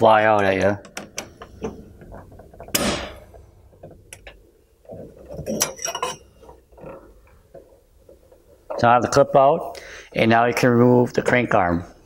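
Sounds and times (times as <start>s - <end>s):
metal clinks and rattles: 3.8s - 7.0s
metal tool clicking and scraping: 5.3s - 7.0s.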